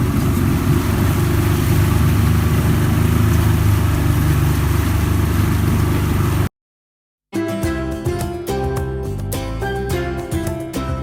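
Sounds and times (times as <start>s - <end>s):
motorboat engine droning: 0.0s - 6.5s
wind and water hiss: 0.0s - 6.5s.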